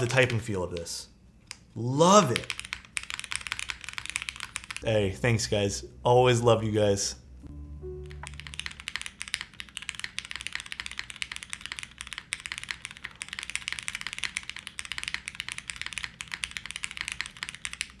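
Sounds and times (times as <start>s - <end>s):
mechanical keyboard typing: 1.5s - 4.8s, 8.1s - 18.0s.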